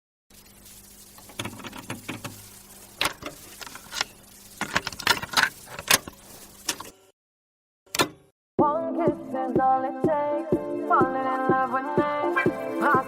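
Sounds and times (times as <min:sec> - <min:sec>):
rustling: 0:12.4 - 0:13.0.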